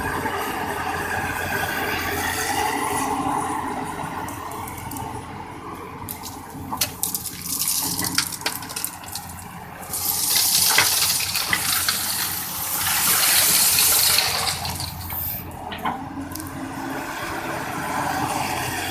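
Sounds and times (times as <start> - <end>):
excavator diesel engine: 0.0 - 18.9
rock clattering: 6.1 - 15.2
stone pouring from bucket: 6.8 - 15.4.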